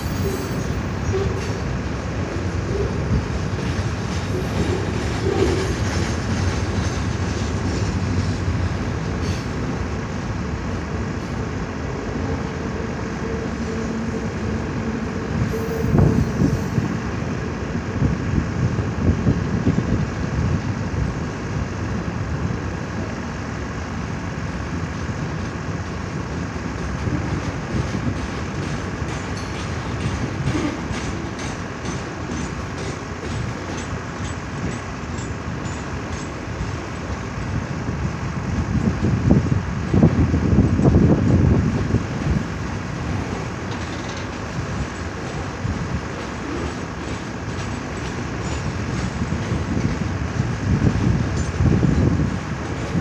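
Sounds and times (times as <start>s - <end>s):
train wheels clattering on rails: 0.0s - 53.0s.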